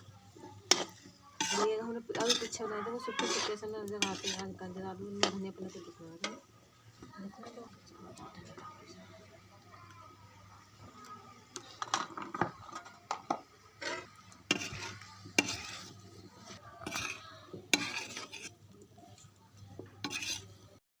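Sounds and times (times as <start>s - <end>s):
spoon scraping a cooking pan: 0.4s - 7.8s, 11.6s - 20.7s.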